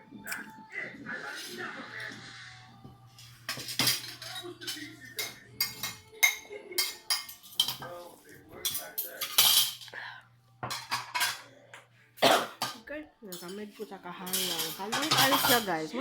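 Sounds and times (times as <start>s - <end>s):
cutlery clinking on a plate: 3.2s - 9.9s, 10.6s - 11.5s, 12.3s - 15.8s.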